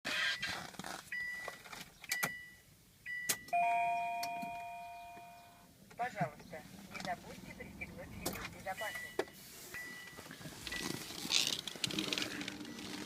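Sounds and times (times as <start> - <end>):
ringing chime: 3.6 - 5.6
short high beeps: 8.8 - 10.9.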